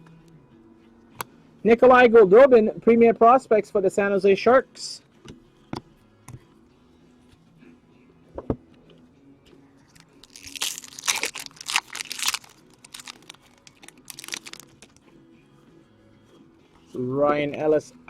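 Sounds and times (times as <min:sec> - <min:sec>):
card pack wrapper tearing and crinkling: 0:10.0 - 0:15.0.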